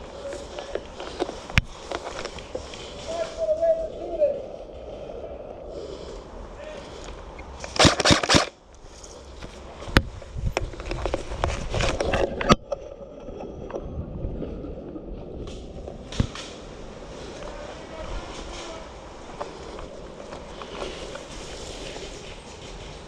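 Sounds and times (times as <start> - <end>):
rough bumps: 0.0 - 23.0
airsoft gun shots: 7.7 - 8.6.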